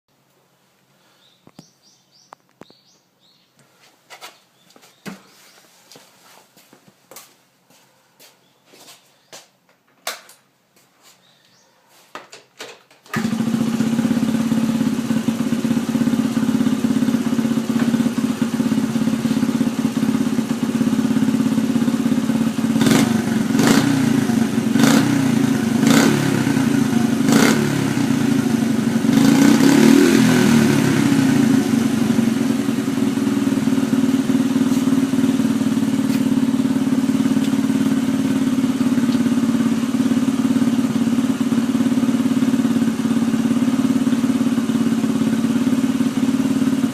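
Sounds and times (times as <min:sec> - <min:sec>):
motorcycle engine idling and revving: 0:13.1 - 0:46.9.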